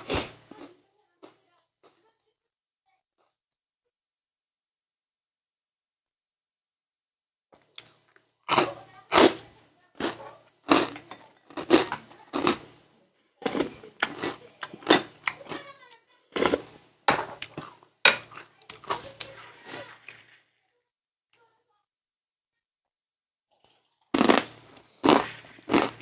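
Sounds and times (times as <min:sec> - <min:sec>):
crunching and chewing: 0:07.6 - 0:15.8, 0:16.4 - 0:20.4, 0:23.5 - 0:26.0.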